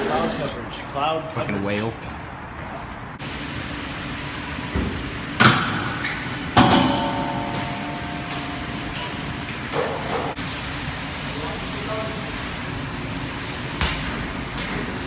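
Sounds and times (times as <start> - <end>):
metallic ring: 6.7 - 9.6.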